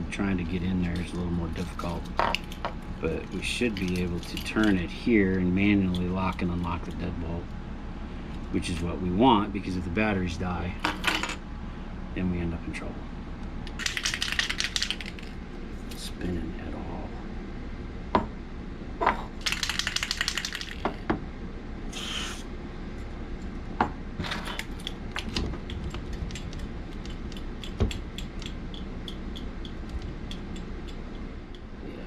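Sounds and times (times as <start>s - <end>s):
short hiss: 21.9s - 22.4s.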